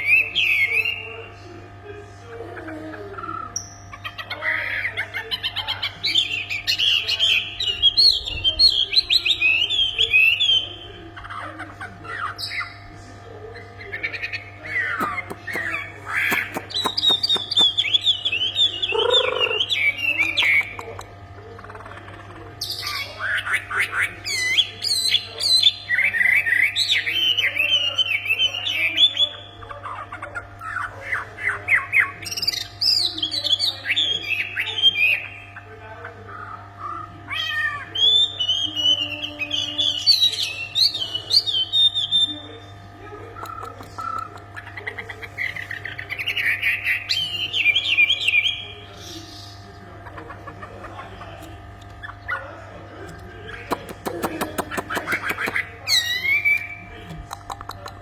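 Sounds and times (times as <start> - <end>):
songbird chirping: 2.8 - 36.2.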